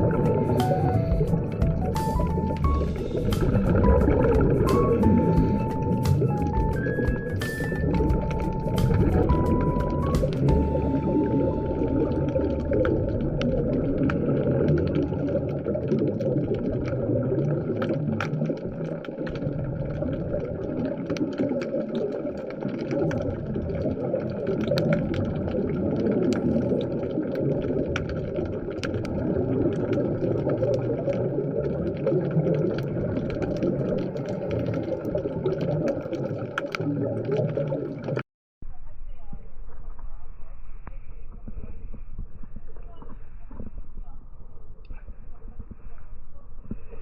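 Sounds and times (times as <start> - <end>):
underwater rush of water: 0.0 - 38.2
sharp clicks and crackles: 12.0 - 38.2.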